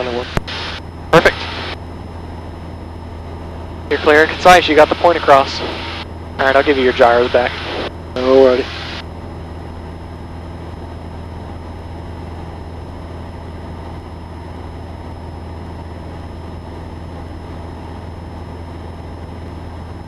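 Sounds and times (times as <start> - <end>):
airplane cabin engine drone: 0.0 - 20.0.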